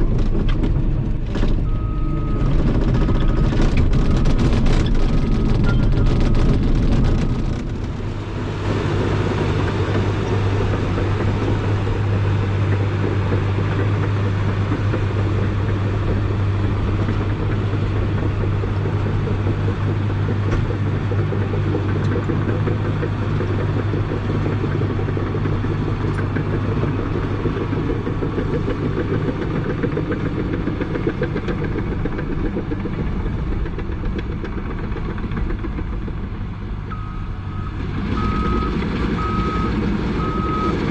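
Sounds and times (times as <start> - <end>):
bulldozer diesel engine droning: 0.0 - 40.9.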